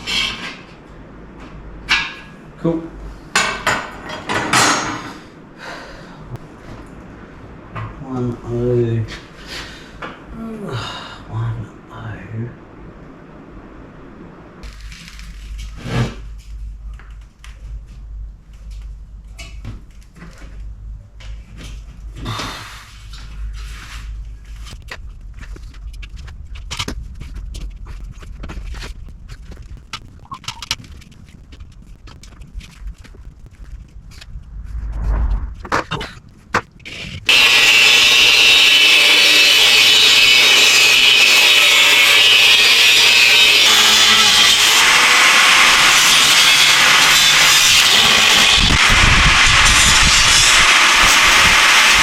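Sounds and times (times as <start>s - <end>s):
low hum: 5.3s - 39.8s
power tool cutting metal: 37.3s - 52.0s.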